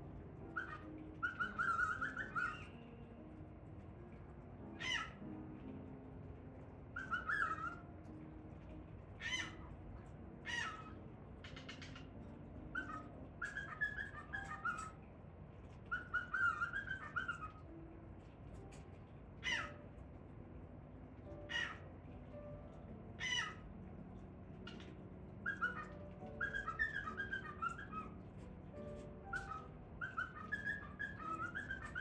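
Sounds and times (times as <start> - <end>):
cockatiel warbling chirps and whistles: 0.4 - 3.2, 4.7 - 5.3, 6.9 - 8.2, 9.2 - 19.9, 21.2 - 32.0
cockatiel squawks: 0.5 - 3.0, 4.7 - 5.3, 7.0 - 8.2, 9.2 - 15.0, 15.6 - 19.9, 21.3 - 21.9, 22.7 - 32.0.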